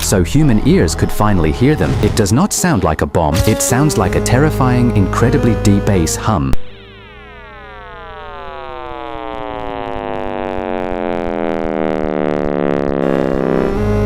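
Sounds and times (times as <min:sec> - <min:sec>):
deep bass hum: 0:00.0 - 0:02.4, 0:03.3 - 0:12.4, 0:13.0 - 0:14.0
tones gliding down in pitch: 0:03.3 - 0:14.0.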